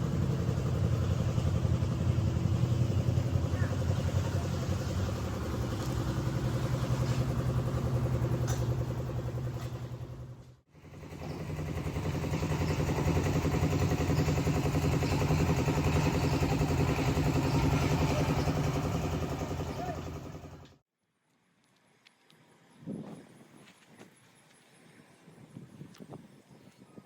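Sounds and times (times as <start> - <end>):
engine running with rapid pulse: 0.0 - 20.8.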